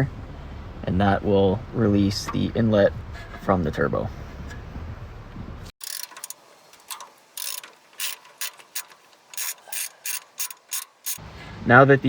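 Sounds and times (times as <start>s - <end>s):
ratchet wrench clicking: 5.8s - 11.2s.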